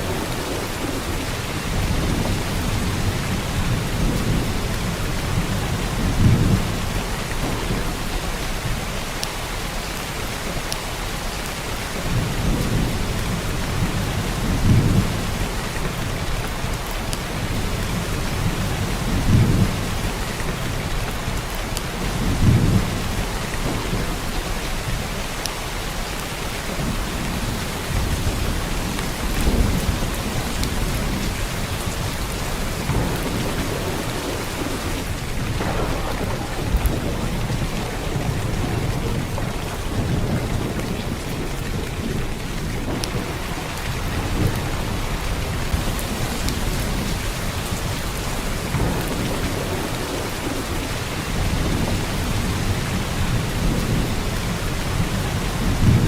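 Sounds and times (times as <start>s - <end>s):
heavy rain hissing: 0.0s - 56.0s
low rumbles: 28.0s - 47.1s.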